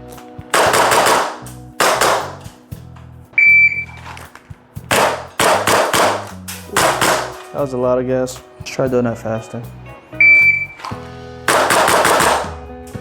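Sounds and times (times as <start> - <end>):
airsoft pistol shots with gas hiss: 0.6 - 2.4, 4.9 - 7.4, 11.5 - 12.5
high beep: 3.4 - 4.0, 10.2 - 10.8.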